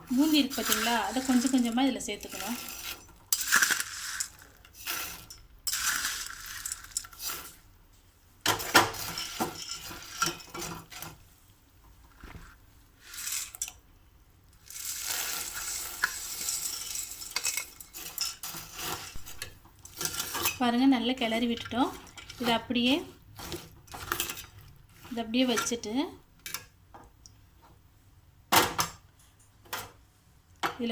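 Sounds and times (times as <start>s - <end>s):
metal spoon scraping a pan: 0.0s - 7.6s, 8.5s - 11.2s, 12.2s - 13.8s, 14.6s - 26.6s.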